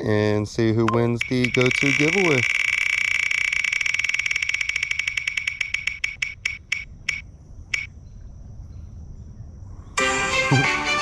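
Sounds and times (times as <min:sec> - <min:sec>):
spin wheel ticking: 0:00.9 - 0:07.2.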